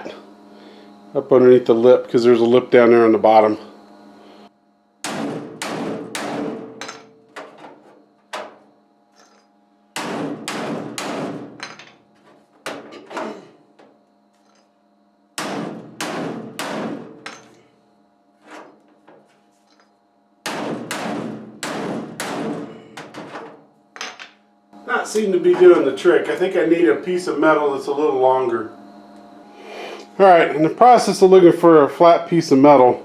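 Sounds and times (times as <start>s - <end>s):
hammer striking sheet metal: 5.0s - 7.2s, 10.0s - 11.8s, 15.4s - 17.6s, 20.4s - 23.4s
metal ringing: 5.6s - 7.3s.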